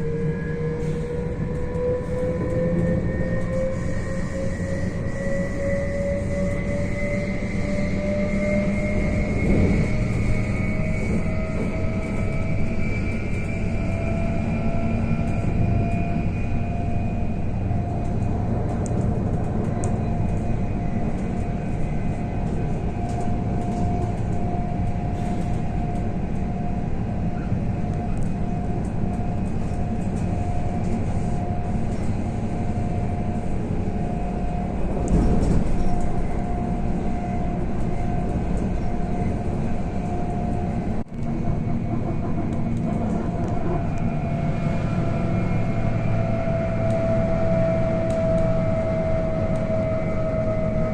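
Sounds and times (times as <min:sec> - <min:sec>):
traction motor whine: 0:00.0 - 0:18.3
electric train rolling rumble: 0:00.0 - 0:50.9.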